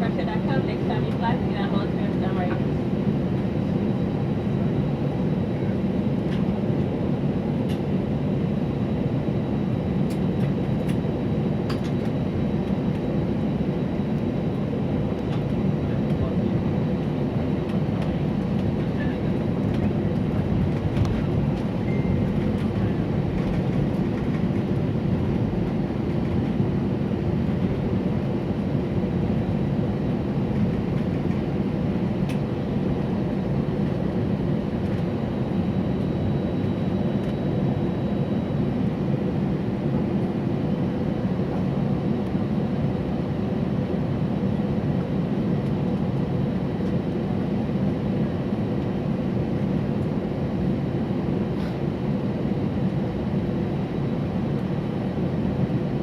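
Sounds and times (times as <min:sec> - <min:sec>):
low airplane cabin rumble: 0:00.0 - 0:56.0.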